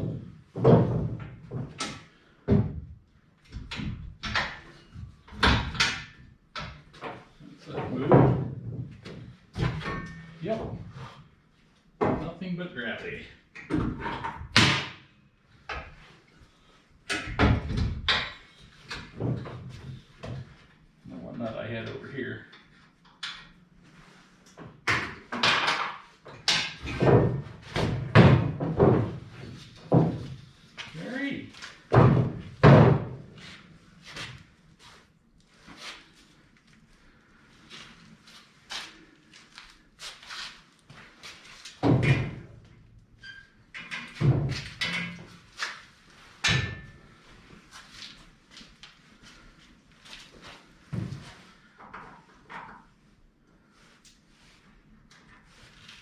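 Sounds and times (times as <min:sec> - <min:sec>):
metal parts clunking and scraping: 0:04.2 - 0:10.4, 0:43.8 - 0:45.6.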